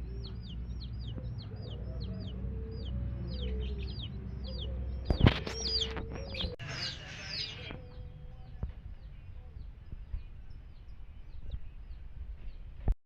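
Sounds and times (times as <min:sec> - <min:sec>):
hen clucking: 0:00.0 - 0:08.0
baby chicks peeping: 0:00.0 - 0:12.9.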